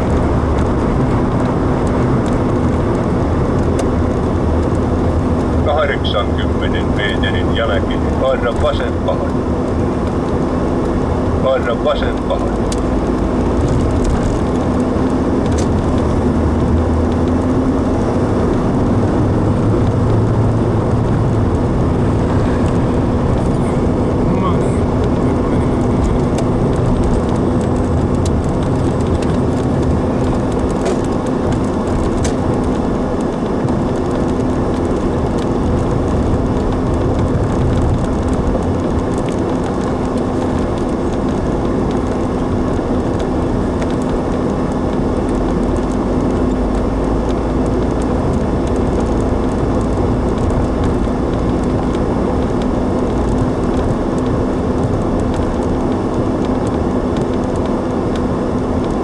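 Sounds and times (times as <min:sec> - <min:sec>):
car cabin road and engine noise: 0:00.0 - 0:59.0.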